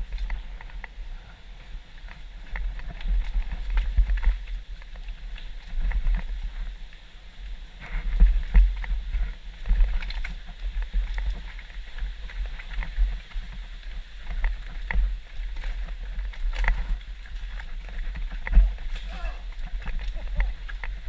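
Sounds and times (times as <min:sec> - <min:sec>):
mountain bike rattling over trail: 0:00.0 - 0:21.0
wind rumble on microphone: 0:00.0 - 0:21.0.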